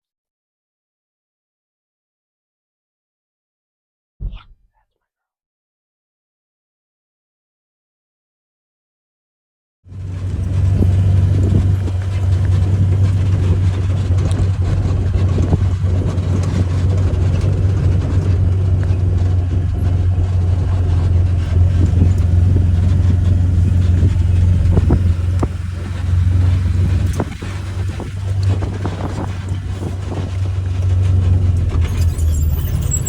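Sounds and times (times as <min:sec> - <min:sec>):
road and wind noise: 0:09.9 - 0:33.0
vehicle engine droning: 0:09.9 - 0:33.0.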